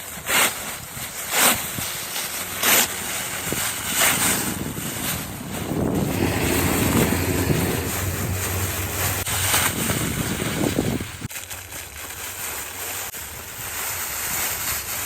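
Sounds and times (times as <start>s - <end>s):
wind buffeting microphone: 0.7s - 11.3s.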